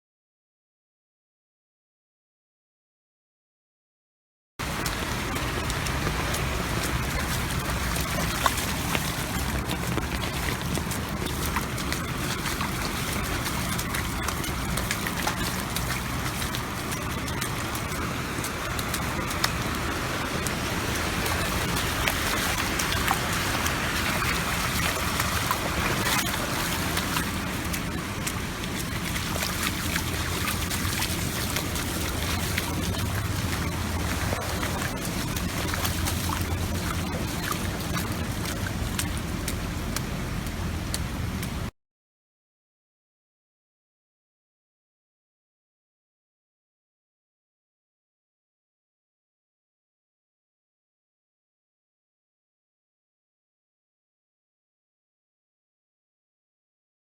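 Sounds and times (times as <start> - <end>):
boots splashing through water: 4.6 - 41.7.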